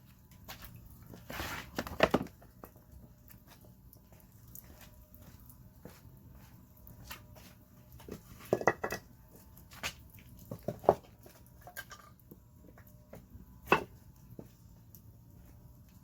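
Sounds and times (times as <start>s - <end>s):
campfire crackling: 2.6s - 5.6s.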